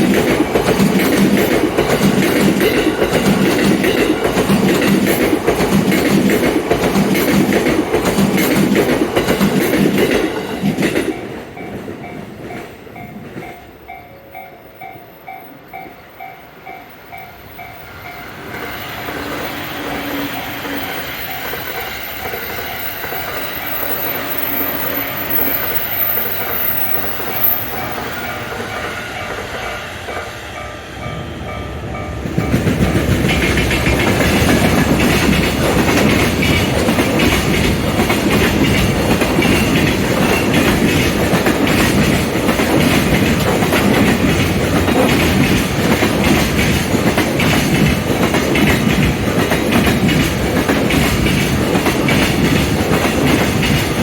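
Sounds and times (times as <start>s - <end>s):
wheels clacking over rail joints: 0.0s - 14.0s, 32.2s - 54.0s
train passing loudly: 0.0s - 54.0s
level crossing warning bell: 10.1s - 42.6s.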